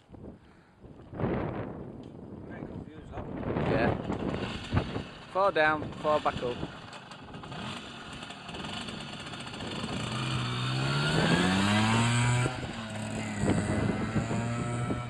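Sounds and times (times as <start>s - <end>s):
moped engine revving: 3.6s - 15.0s.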